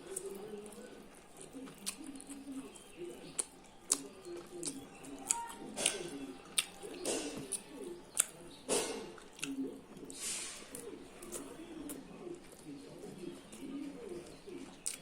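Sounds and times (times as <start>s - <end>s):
pigeons cooing: 0.0s - 15.0s
wet chewing and lip smacking: 0.0s - 15.0s
mouth clicks: 3.2s - 10.1s, 14.8s - 15.0s.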